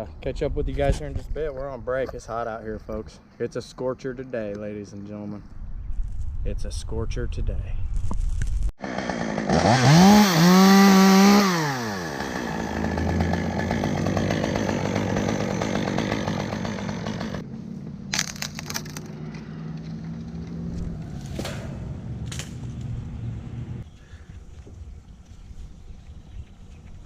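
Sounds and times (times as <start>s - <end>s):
chainsaw revving and idling: 8.8s - 17.5s.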